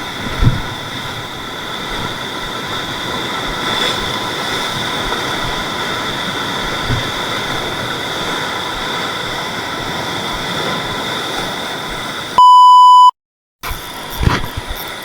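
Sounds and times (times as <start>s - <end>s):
sea waves on rocky shore: 0.0s - 12.4s
bleep tone: 12.4s - 13.1s.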